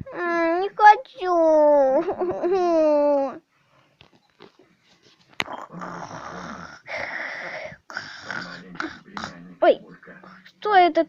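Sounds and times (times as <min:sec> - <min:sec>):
cat snoring: 0:05.5 - 0:06.9.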